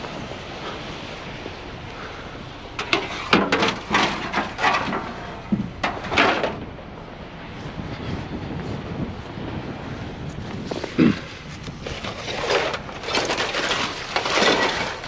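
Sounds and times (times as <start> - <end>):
metal knocks and clanks: 2.8 - 6.8, 11.9 - 15.0.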